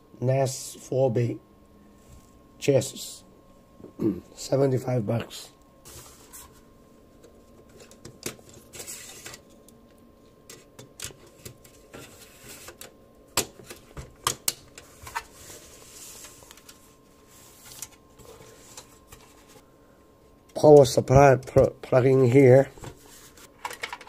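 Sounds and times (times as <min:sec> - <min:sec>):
computer hardware being handled: 0:07.2 - 0:19.6, 0:22.8 - 0:24.0.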